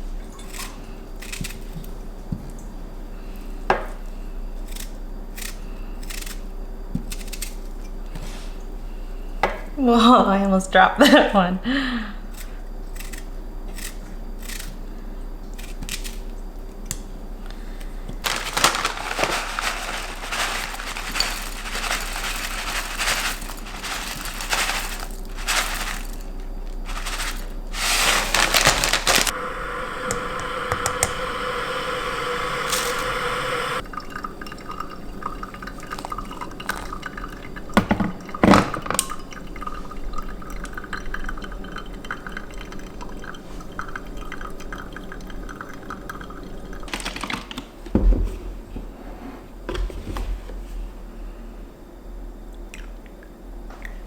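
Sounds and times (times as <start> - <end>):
steady hum: 16.6 - 37.8
liquid pouring and dripping: 29.0 - 46.9.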